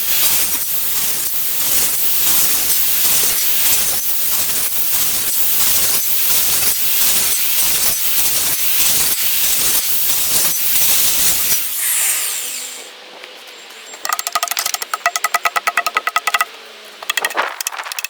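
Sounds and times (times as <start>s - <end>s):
saw blade winding down: 0.0s - 12.9s
circular saw cutting wood: 0.0s - 13.0s.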